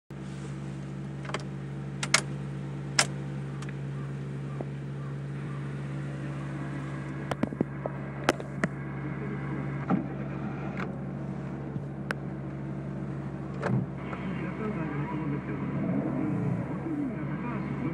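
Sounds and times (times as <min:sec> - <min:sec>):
car engine idling: 0:00.1 - 0:17.9
sharp clicks: 0:01.2 - 0:02.3.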